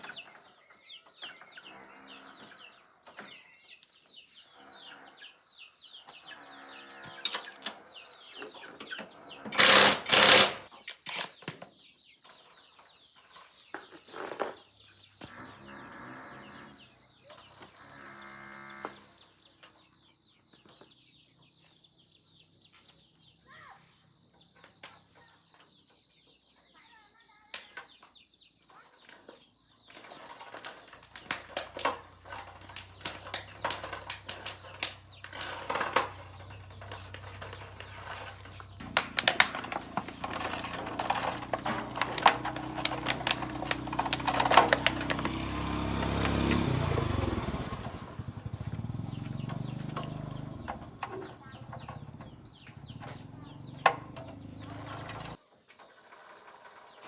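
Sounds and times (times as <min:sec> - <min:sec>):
hand tools clicking on metal: 0:09.5 - 0:11.5, 0:30.1 - 0:47.9.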